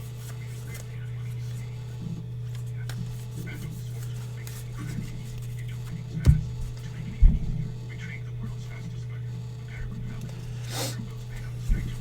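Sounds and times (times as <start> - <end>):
trading cards being handled: 0.0 - 1.7, 2.5 - 6.0
low electrical hum: 0.0 - 12.0.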